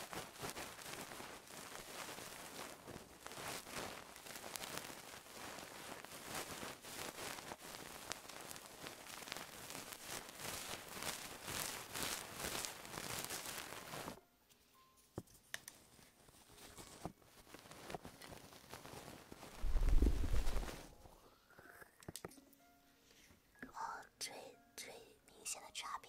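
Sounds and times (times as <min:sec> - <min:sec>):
feather scratching a microphone: 0:16.6 - 0:20.9.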